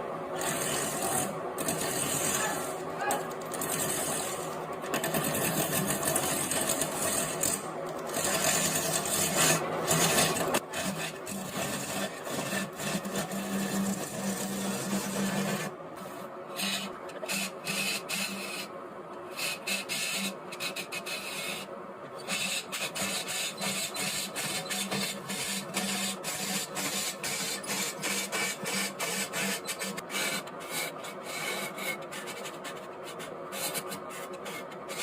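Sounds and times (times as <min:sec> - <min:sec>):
tool cutting spinning wood: 0:00.0 - 0:18.7, 0:19.3 - 0:35.0
wood lathe humming: 0:00.4 - 0:18.6.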